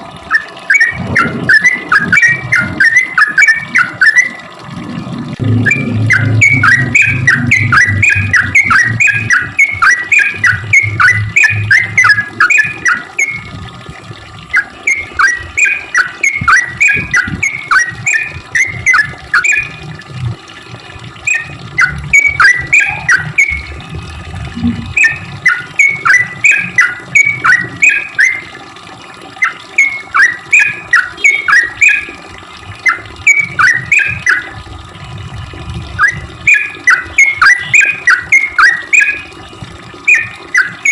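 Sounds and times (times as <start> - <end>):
bird singing: 5.4 - 13.5, 14.5 - 19.8, 21.3 - 23.7, 24.7 - 28.5, 29.4 - 32.2, 32.9 - 34.5, 36.0 - 39.3, 40.1 - 40.9.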